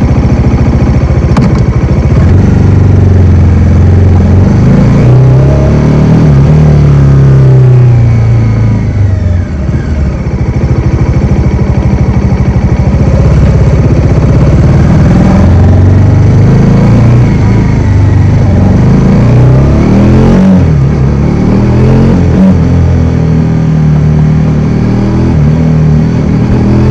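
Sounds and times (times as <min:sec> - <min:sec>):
motorcycle engine accelerating: 0:00.0 - 0:26.9.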